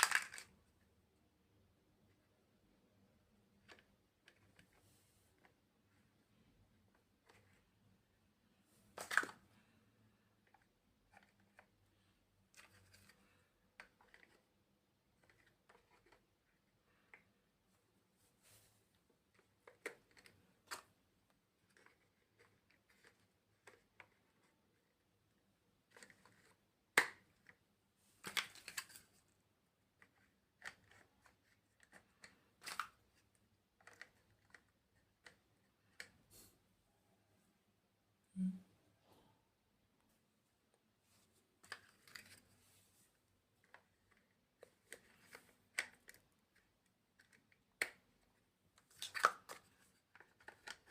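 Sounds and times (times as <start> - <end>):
plastic blocks clicking: 0.0 - 0.6, 9.0 - 9.4, 12.5 - 14.4, 30.0 - 36.1, 43.6 - 50.9.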